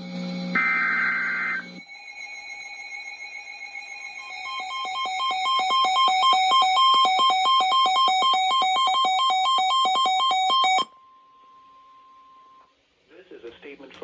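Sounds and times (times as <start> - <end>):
warbling emergency alert tone: 0.6 - 11.0.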